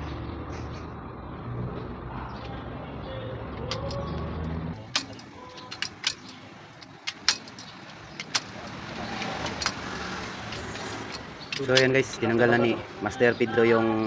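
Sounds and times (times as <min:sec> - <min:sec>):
metallic clicks of hand tools: 0:03.6 - 0:04.2, 0:04.8 - 0:12.2.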